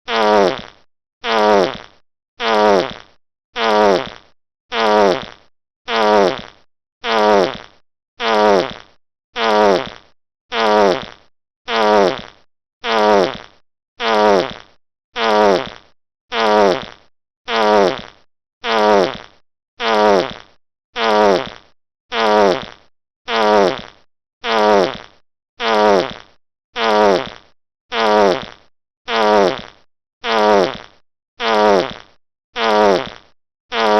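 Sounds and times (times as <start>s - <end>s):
fart sound effect: 0.1s - 33.9s.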